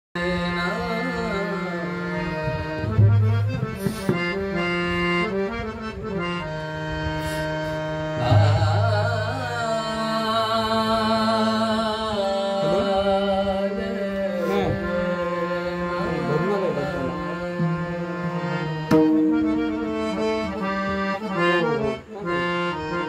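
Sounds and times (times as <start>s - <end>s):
person singing: 0.2s - 3.0s, 8.1s - 20.7s
harmonium chords: 0.2s - 23.0s.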